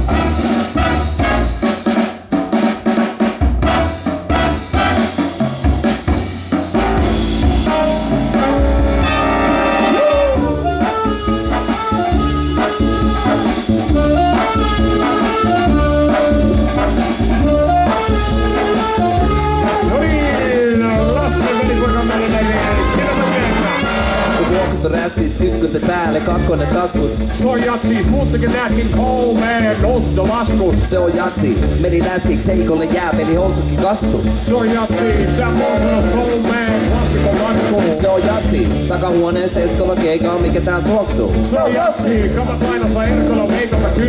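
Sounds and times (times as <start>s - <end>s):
sliding brass notes: 0.0s - 1.8s, 3.6s - 5.4s, 6.7s - 25.0s, 34.6s - 38.4s
big band playing: 0.0s - 44.0s.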